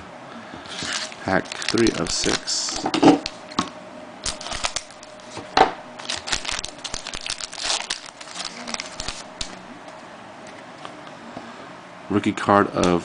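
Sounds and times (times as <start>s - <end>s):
wrapper crinkling and tearing: 0.7s - 3.5s, 4.2s - 5.4s, 6.0s - 9.6s
cards being handled: 4.3s - 9.6s.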